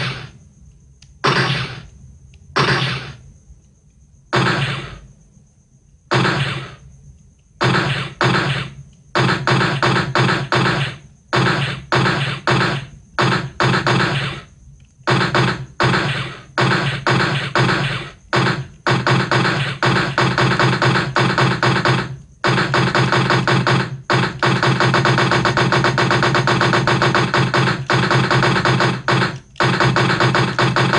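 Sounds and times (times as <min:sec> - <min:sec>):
machine-gun fire bursts: 0:04.3 - 0:05.0, 0:06.1 - 0:06.8, 0:07.6 - 0:14.5, 0:15.1 - 0:30.9.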